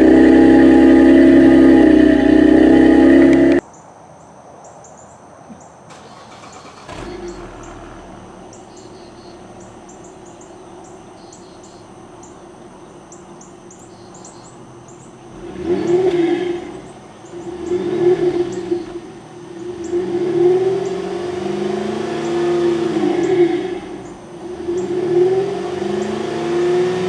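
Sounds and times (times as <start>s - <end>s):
car engine idling and revving: 0.0s - 3.6s, 5.9s - 27.0s
birds chirping: 0.0s - 27.0s.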